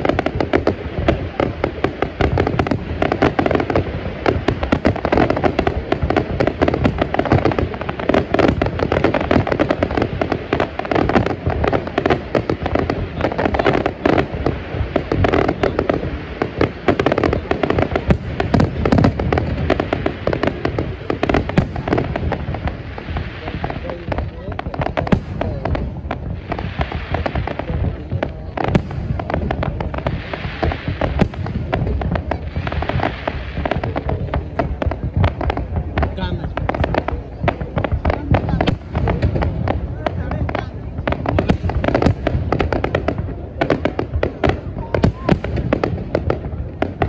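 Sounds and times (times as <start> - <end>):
fireworks bangs and crackling: 0.0 - 47.0.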